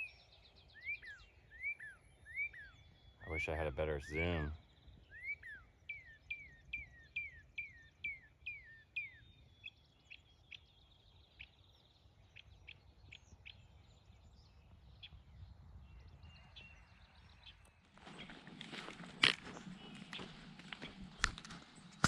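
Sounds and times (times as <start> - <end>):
songbird whistling: 0.0 - 3.4, 4.6 - 10.8.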